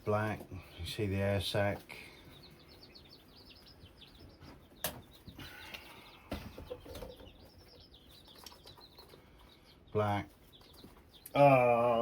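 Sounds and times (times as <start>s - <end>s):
chicks peeping: 0.0s - 12.0s.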